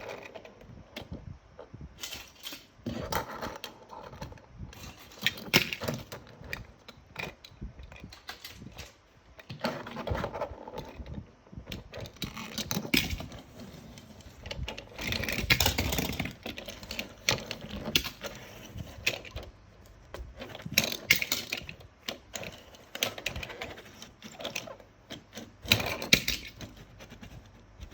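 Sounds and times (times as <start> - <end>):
metal toy cars clattering: 2.0 - 3.8, 20.4 - 26.9.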